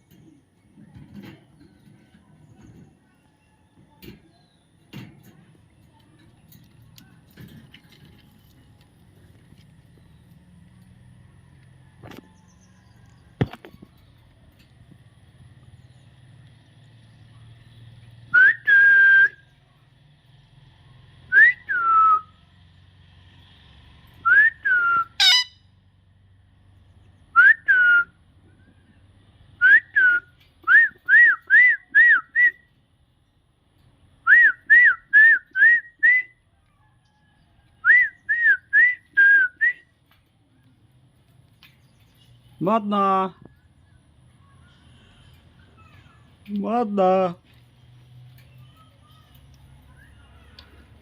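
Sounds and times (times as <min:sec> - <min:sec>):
parrot whistling: 0:24.8 - 0:25.6.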